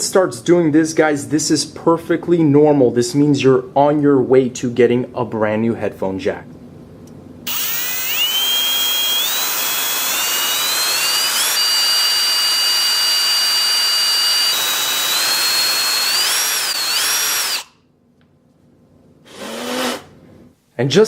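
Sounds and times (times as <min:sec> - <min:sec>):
electric drill whining: 0:07.5 - 0:17.8, 0:19.3 - 0:20.1.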